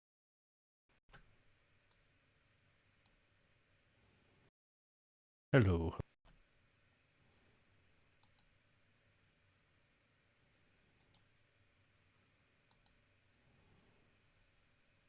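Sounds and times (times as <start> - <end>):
computer mouse clicking: 8.2 - 8.5, 11.0 - 11.3, 12.7 - 13.0.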